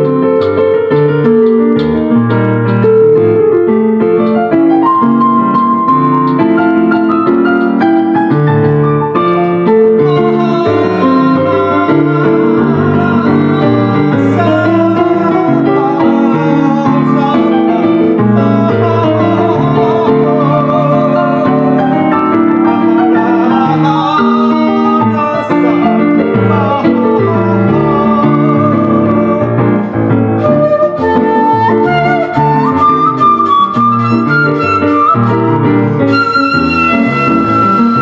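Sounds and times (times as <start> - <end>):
piano playing: 0.0 - 38.0
man singing: 9.6 - 38.0.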